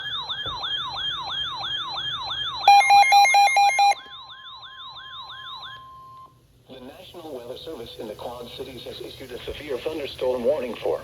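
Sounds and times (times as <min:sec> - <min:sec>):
pulsing electronic alarm beeps: 0:00.0 - 0:06.1
steady alert tone: 0:02.7 - 0:04.0.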